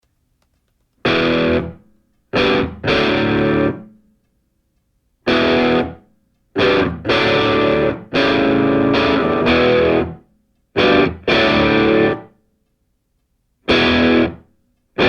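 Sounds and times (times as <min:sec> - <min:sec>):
distorted electric guitar chord stabs: 0:01.1 - 0:01.8, 0:02.4 - 0:03.9, 0:05.3 - 0:06.0, 0:06.6 - 0:10.2, 0:10.8 - 0:12.3, 0:13.7 - 0:14.4.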